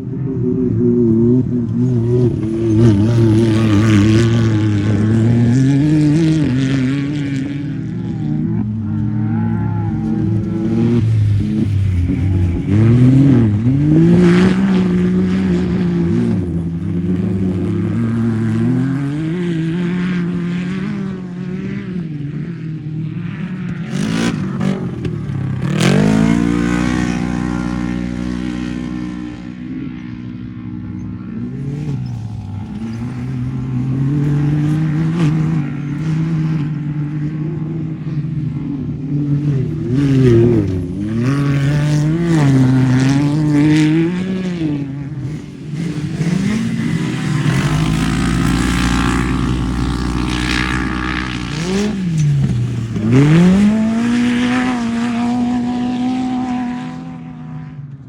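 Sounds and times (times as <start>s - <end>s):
engine revving hard: 23.9s - 28.8s, 39.7s - 56.6s.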